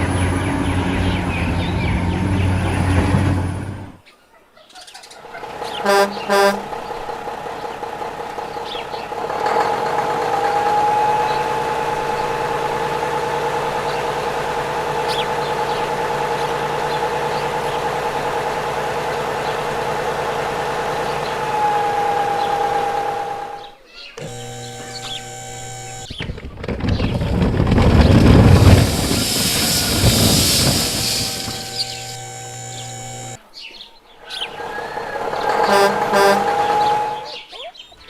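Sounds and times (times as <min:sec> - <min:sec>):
horn toots: 0:05.7 - 0:06.8, 0:20.9 - 0:26.1, 0:28.2 - 0:33.4, 0:35.4 - 0:37.4
humming drone with warble: 0:10.3 - 0:23.6, 0:24.2 - 0:26.2, 0:26.9 - 0:33.4.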